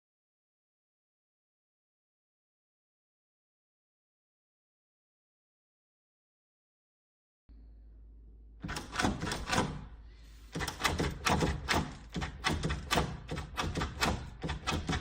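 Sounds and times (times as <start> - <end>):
door latch clicking: 8.6 - 15.0.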